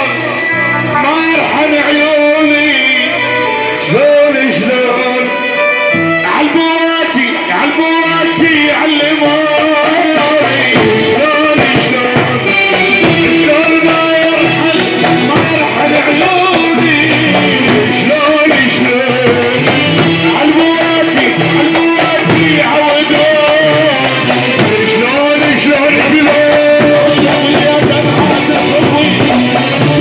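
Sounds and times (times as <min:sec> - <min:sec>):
steady percussion beat: 0:09.4 - 0:30.0.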